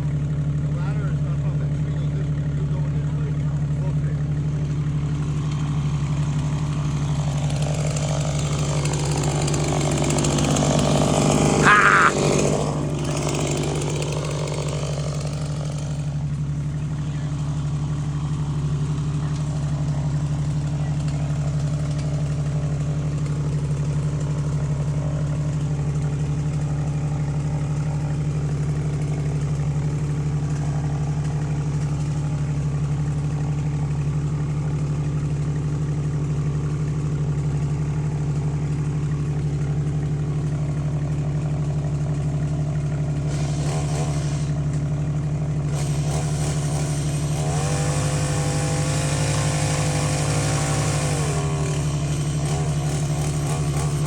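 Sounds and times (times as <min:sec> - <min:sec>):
car engine idling: 0:00.0 - 0:54.0
power saw cutting branch: 0:06.2 - 0:16.2, 0:19.3 - 0:33.3, 0:42.4 - 0:44.9, 0:45.7 - 0:54.0.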